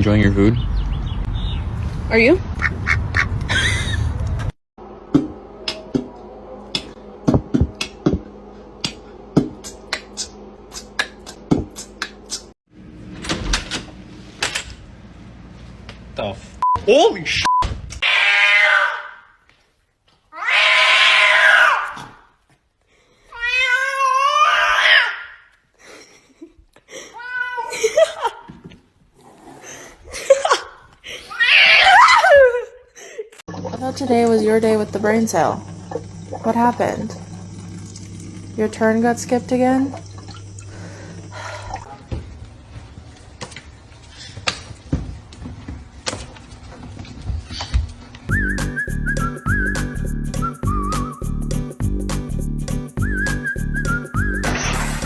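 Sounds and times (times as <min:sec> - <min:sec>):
cat yowling: 0:18.0 - 0:19.3, 0:20.4 - 0:22.0, 0:23.4 - 0:25.4, 0:31.3 - 0:32.4.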